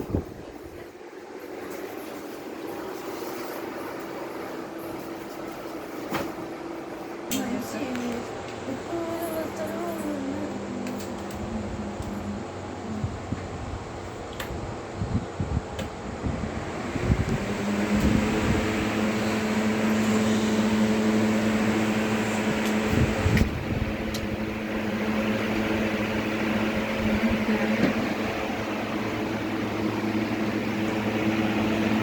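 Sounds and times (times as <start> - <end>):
fan motor humming: 0.0 - 32.0.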